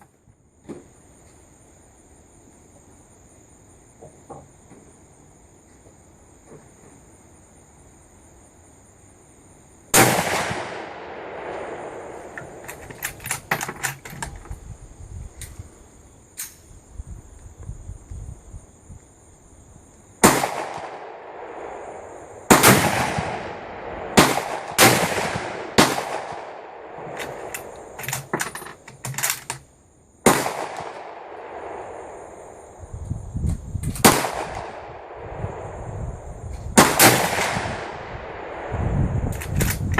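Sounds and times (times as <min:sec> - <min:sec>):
echoing rifle gunshots: 0:09.9 - 0:14.2, 0:20.2 - 0:29.6, 0:30.2 - 0:32.5, 0:34.0 - 0:35.7, 0:36.8 - 0:38.8
sharp quick gunshot cracks: 0:10.0 - 0:12.6, 0:20.2 - 0:21.6, 0:30.3 - 0:31.8, 0:34.0 - 0:34.8, 0:36.8 - 0:38.7.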